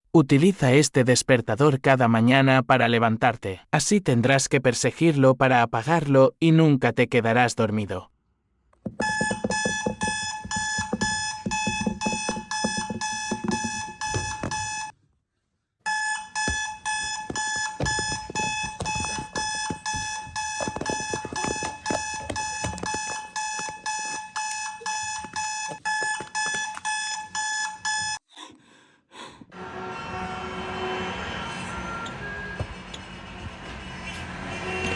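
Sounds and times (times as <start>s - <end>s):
alarm clock beeping: 8.9s - 14.9s, 15.8s - 28.2s.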